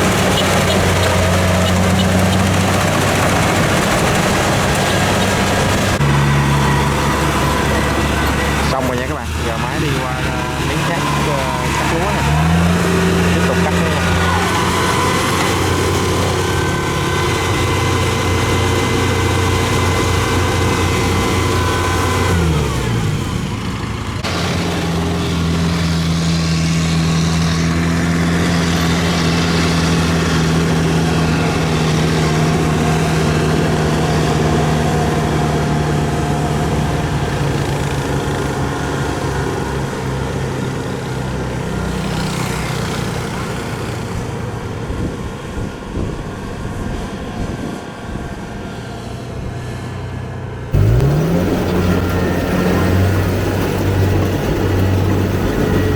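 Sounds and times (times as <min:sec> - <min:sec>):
combine harvester diesel engine: 0:00.0 - 0:55.9.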